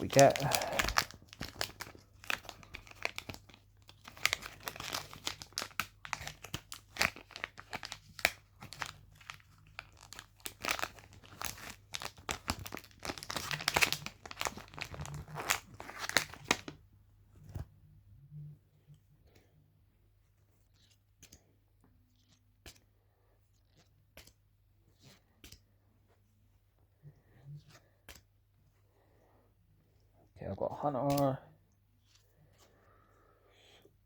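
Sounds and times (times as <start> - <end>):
foil wrapper tearing and crinkling: 0.0 - 16.8.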